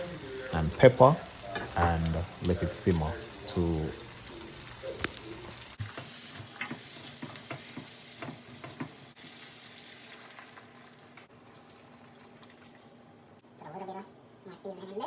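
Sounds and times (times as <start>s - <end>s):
vegetables sizzling in a pot: 0.0s - 11.3s.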